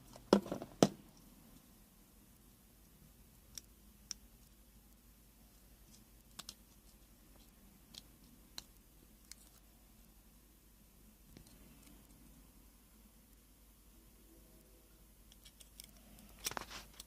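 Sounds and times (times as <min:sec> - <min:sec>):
small plastic clicks: 0:03.3 - 0:04.6, 0:05.9 - 0:06.6.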